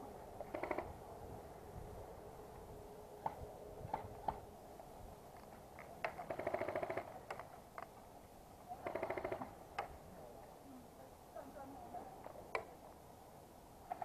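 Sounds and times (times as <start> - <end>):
distant airsoft gun bursts: 6.1 - 7.2, 8.8 - 9.6.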